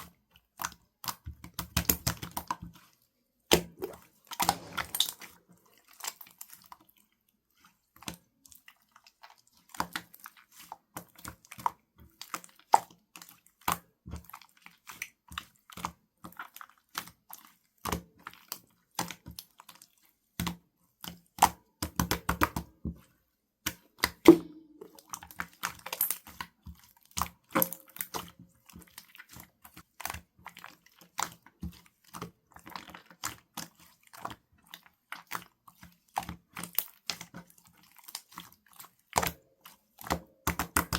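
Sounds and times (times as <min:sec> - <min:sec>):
slime squished by hand: 0:03.6 - 0:05.4.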